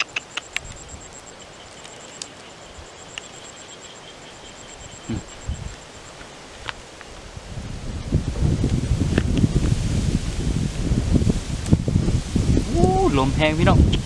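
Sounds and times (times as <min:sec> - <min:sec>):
small clicks: 0:00.0 - 0:00.8
fainter insect trill: 0:00.0 - 0:06.2
insect chirping: 0:00.0 - 0:14.0.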